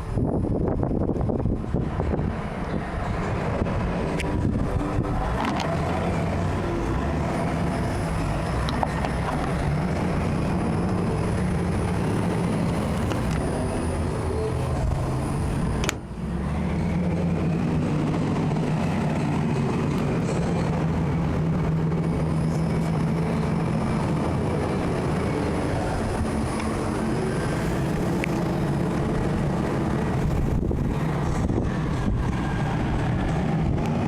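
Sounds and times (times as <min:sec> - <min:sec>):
low mechanical drone: 0:00.0 - 0:34.0
click: 0:15.8 - 0:16.0.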